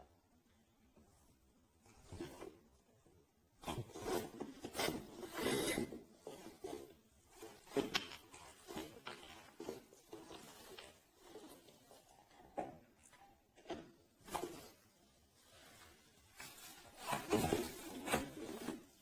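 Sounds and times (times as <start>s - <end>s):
rubbing and scraping: 3.6s - 13.0s, 13.6s - 19.0s.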